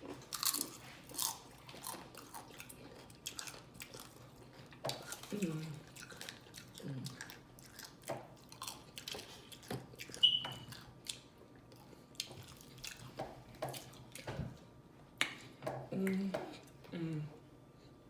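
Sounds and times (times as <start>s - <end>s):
chewing and lip smacking: 0.0s - 14.3s
brief high squeak: 10.2s - 10.7s.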